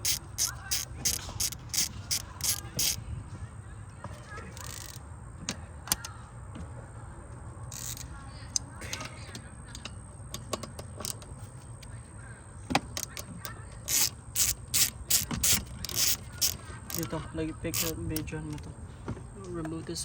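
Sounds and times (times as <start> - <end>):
metal tools clinking and rattling: 0.0 - 3.0, 13.0 - 18.6
sharp clicks: 0.0 - 3.0, 12.8 - 18.7
steady low hum: 0.0 - 20.0.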